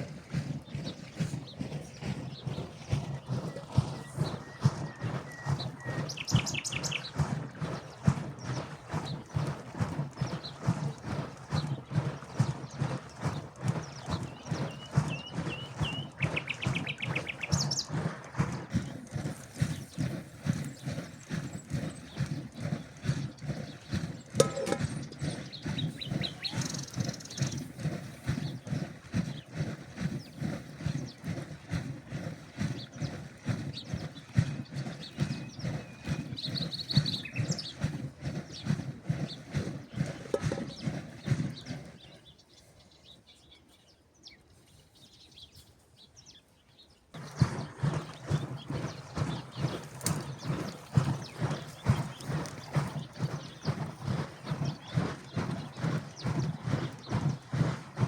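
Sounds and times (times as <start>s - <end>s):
milk sloshing in churning bag: 0.0s - 42.5s, 47.2s - 58.0s
birds chirping faintly: 0.6s - 7.2s, 10.1s - 18.0s, 18.6s - 57.6s
dull rhythmic thumps: 2.1s - 28.0s, 33.9s - 41.0s, 47.2s - 58.0s.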